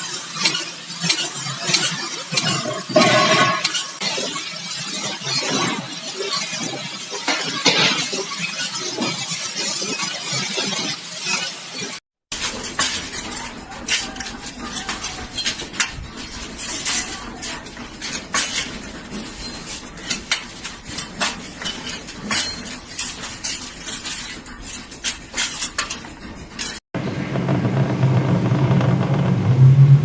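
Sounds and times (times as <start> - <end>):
steady mechanical noise: 8.1 - 30.0.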